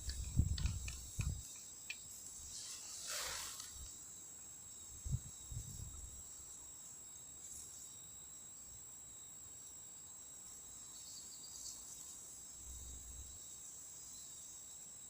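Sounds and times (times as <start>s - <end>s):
handling knocks and clicks: 0.0s - 2.1s
faint steady high whine: 0.0s - 15.0s.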